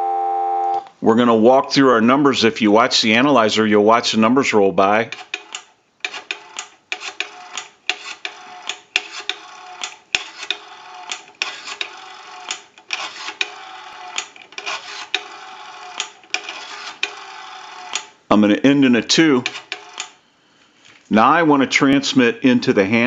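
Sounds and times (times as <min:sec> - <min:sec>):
phone line tones: 0:00.0 - 0:00.9
payphone dial clicks: 0:05.1 - 0:18.1, 0:19.0 - 0:20.2.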